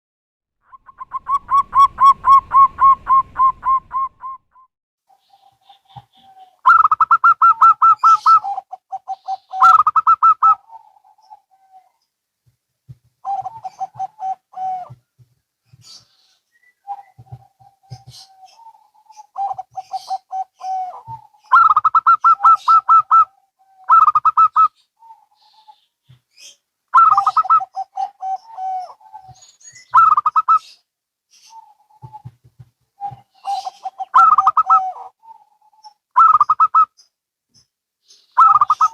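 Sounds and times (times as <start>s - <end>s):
doves cooing: 0.7s - 4.4s, 13.2s - 15.0s, 16.8s - 25.8s, 27.0s - 29.4s, 33.0s - 36.9s, 38.4s - 38.9s.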